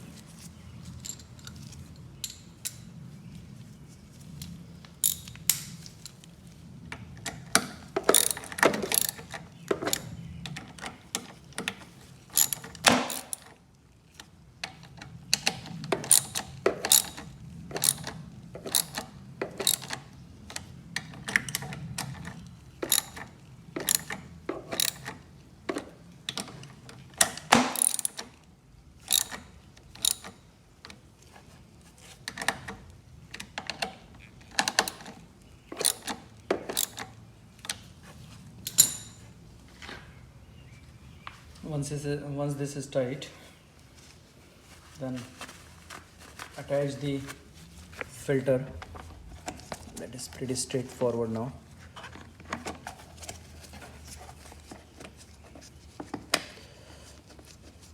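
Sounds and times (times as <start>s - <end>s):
metallic clicks of hand tools: 7.2s - 13.6s, 14.6s - 26.5s, 27.2s - 28.3s, 29.1s - 30.4s, 33.4s - 37.8s
ratchet wrench clicking: 8.1s - 10.1s, 12.4s - 13.5s, 16.0s - 17.2s, 18.7s - 19.0s, 19.6s - 20.0s, 22.8s - 23.2s, 29.0s - 30.3s.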